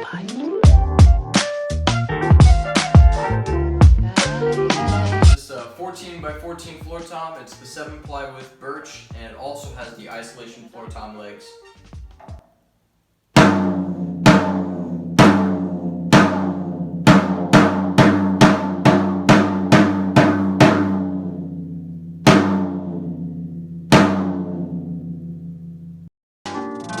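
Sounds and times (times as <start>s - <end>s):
floor tom drum hits ringing: 13.4s - 25.6s.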